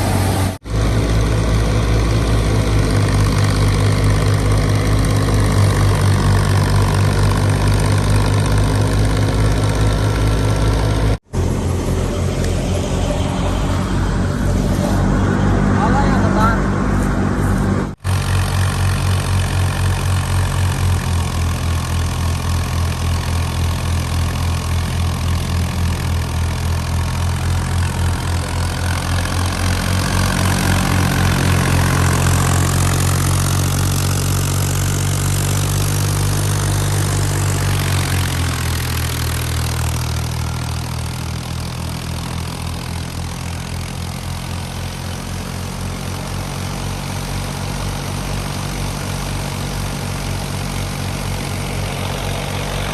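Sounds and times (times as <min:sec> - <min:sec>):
tractor diesel engine running: 0:00.0 - 0:52.9
thresher machinery rushing: 0:25.0 - 0:41.5.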